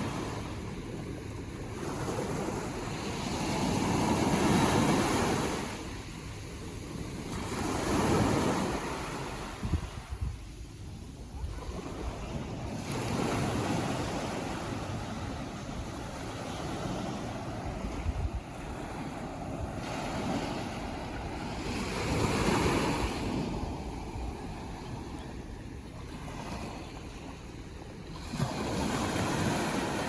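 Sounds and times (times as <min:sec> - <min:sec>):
wind buffeting microphone: 0:00.0 - 0:30.0
ocean waves breaking: 0:11.5 - 0:30.0.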